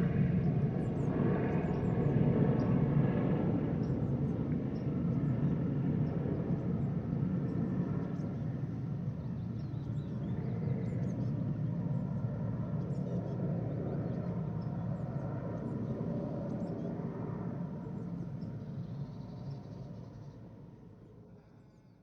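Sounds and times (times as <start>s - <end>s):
helicopter rotor and engine: 0.0s - 21.9s.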